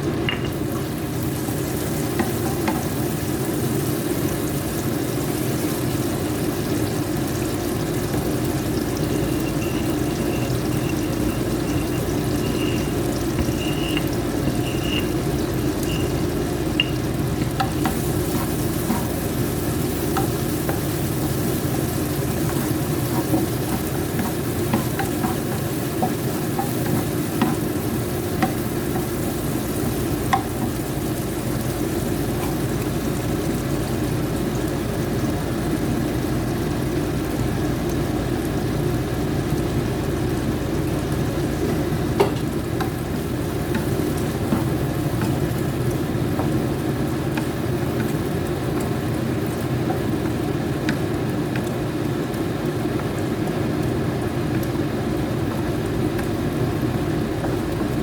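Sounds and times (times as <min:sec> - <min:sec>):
food sizzling in a frying pan: 0:00.0 - 0:58.0
utensil clicking against pan: 0:11.8 - 0:33.1, 0:41.7 - 0:46.6.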